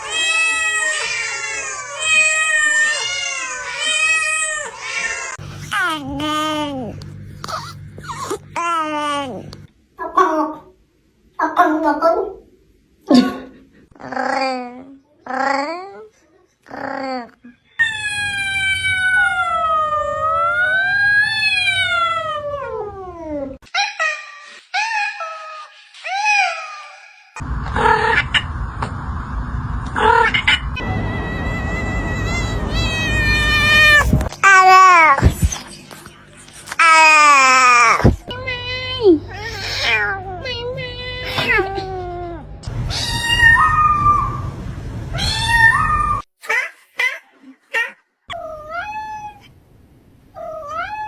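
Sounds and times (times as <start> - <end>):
cat meowing: 0.0 - 5.4, 30.8 - 34.3, 42.7 - 44.5, 45.1 - 46.2.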